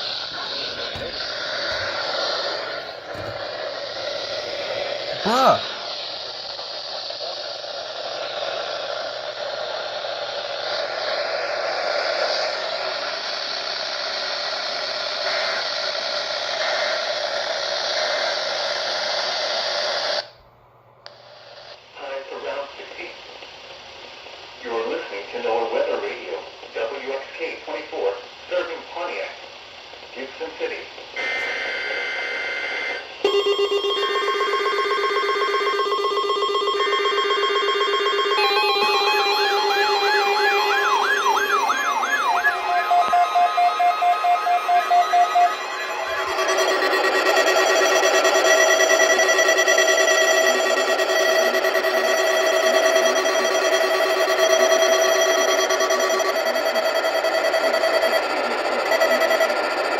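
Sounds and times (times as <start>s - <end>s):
warbling siren-like alarm tone: 0.0s - 9.2s, 31.6s - 59.9s
warbling digital data tones: 0.0s - 12.6s, 33.3s - 59.9s
radio static hiss: 0.0s - 20.3s, 21.1s - 33.3s, 37.8s - 59.9s
steady buzzing alarm tone: 0.0s - 20.3s, 31.2s - 59.9s.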